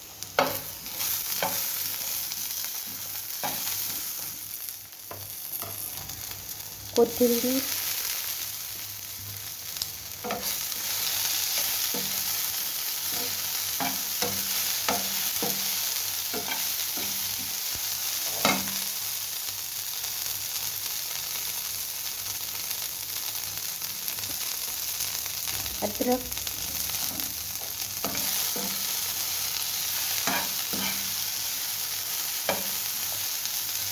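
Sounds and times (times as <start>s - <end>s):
food sizzling in hot oil: 0.0s - 33.9s
spatula scraping a pan: 26.6s - 29.2s, 29.8s - 31.2s.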